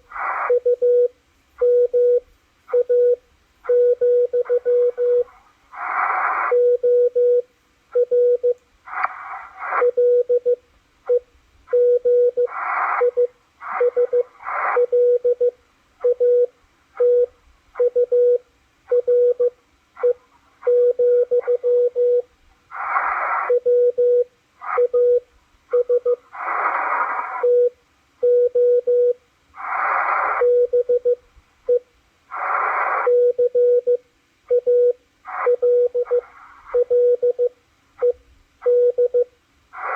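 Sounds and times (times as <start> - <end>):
radio band noise hiss: 0.0 - 0.6, 4.6 - 6.7, 8.8 - 10.0, 12.4 - 15.2, 22.5 - 23.7, 24.4 - 24.9, 26.1 - 27.6, 29.5 - 30.7, 32.2 - 33.3, 35.2 - 36.9, 39.7 - 39.9
morse code tone: 0.5 - 5.3, 9.7 - 22.3, 33.0 - 39.3.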